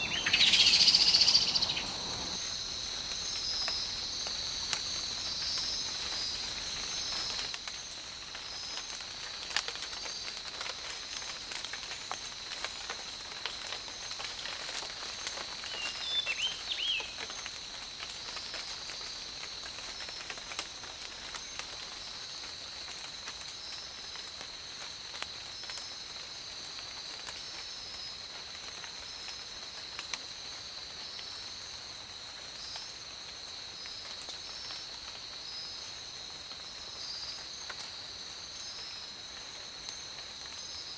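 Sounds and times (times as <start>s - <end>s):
bird chirping: 0.0s - 2.4s, 15.7s - 17.2s
pulsing insect chorus: 0.0s - 8.8s
insects droning: 0.0s - 40.9s.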